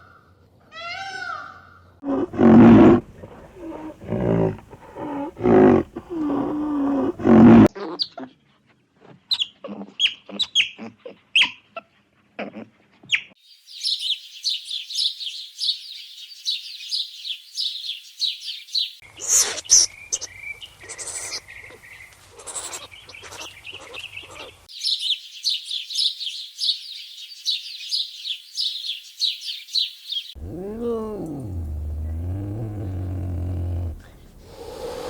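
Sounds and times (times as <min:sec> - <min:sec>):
large animal growling and roaring: 0:02.0 - 0:07.7, 0:30.4 - 0:35.0.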